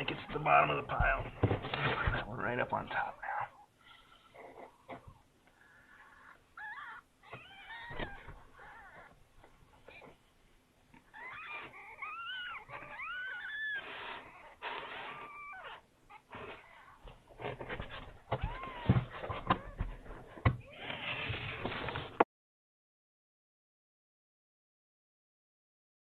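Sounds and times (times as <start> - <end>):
kittens mewing: 11.0 - 20.0.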